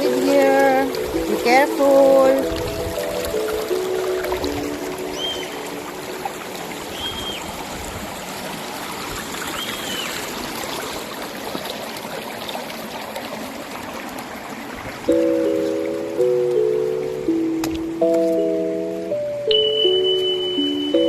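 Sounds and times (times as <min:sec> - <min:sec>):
river water rushing over rocks: 0:00.0 - 0:19.2
short high whistles: 0:06.9 - 0:07.4.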